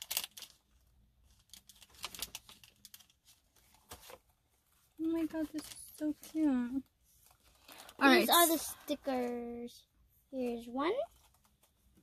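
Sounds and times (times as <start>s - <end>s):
packaging rustling: 0.0s - 4.8s.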